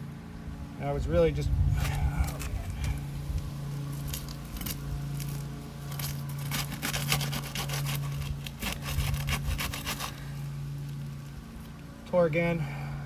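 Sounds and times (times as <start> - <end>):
steady low hum: 0.0 - 13.0
roof shingle tearing and crackling: 1.7 - 11.9.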